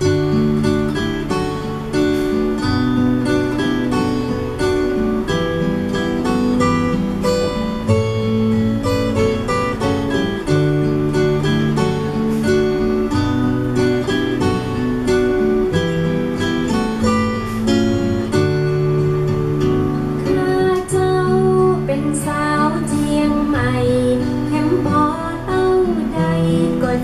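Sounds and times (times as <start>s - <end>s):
guitar over a bass line: 0.0s - 27.0s.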